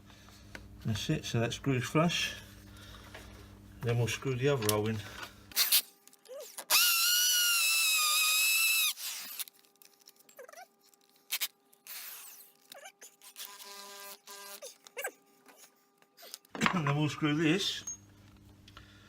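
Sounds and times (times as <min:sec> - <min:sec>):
drill-driver motor whining: 0:05.6 - 0:09.6, 0:11.3 - 0:15.1.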